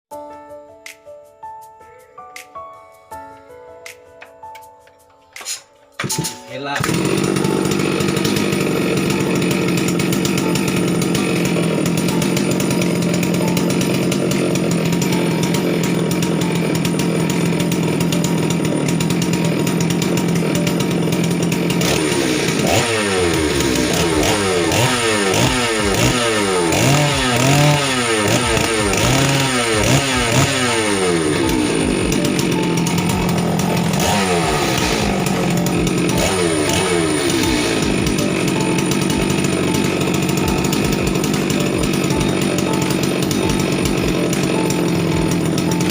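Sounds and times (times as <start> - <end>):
chainsaw engine idling and revving: 6.0 - 45.9.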